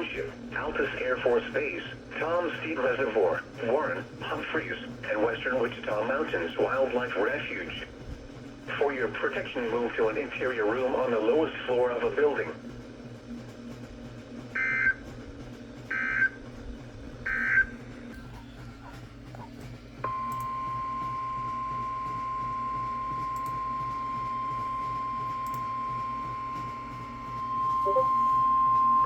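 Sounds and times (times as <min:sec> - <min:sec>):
steady radio alarm tone: 0:14.6 - 0:15.1, 0:15.9 - 0:16.4, 0:17.2 - 0:29.0.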